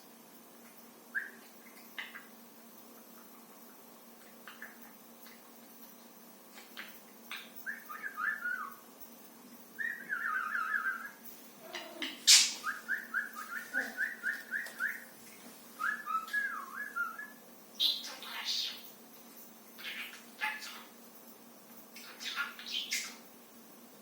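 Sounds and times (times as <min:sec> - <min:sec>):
parrot whistling: 0:07.7 - 0:08.7, 0:09.8 - 0:15.1, 0:15.8 - 0:18.7.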